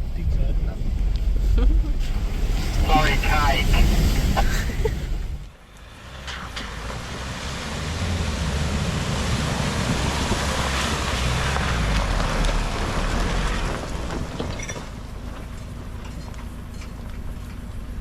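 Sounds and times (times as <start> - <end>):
broad rushing noise: 0.0 - 12.0
vehicle engine rumble: 0.0 - 18.0.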